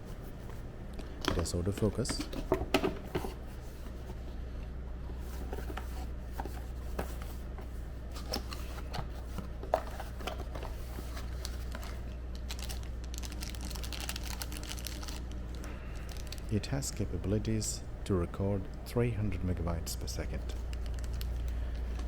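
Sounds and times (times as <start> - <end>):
steady low hum: 0.0 - 22.0
packaging clicks and rustles: 8.2 - 16.6, 20.3 - 22.0.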